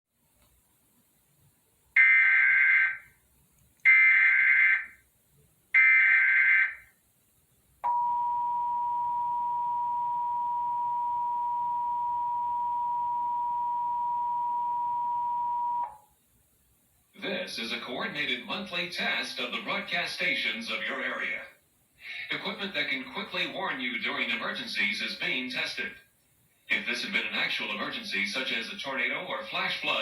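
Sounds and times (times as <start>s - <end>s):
steady two-tone attention signal: 7.9s - 16.0s.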